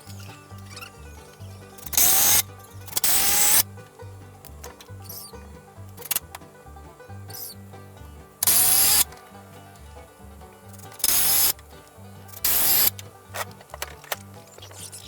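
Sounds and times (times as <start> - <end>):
power drill driving screws: 1.9 - 3.6, 8.4 - 9.1, 11.0 - 11.6, 12.4 - 12.9.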